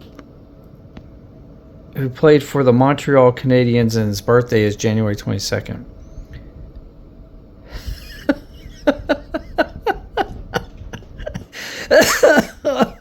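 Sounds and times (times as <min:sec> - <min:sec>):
person laughing: 0:07.7 - 0:13.0.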